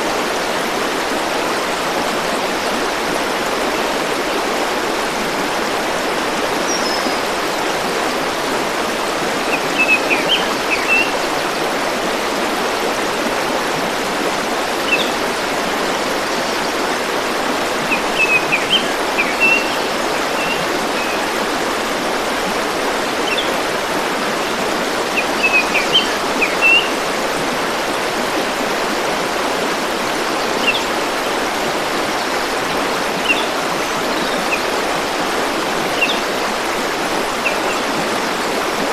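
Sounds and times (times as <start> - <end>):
stream rushing: 0.0 - 38.9.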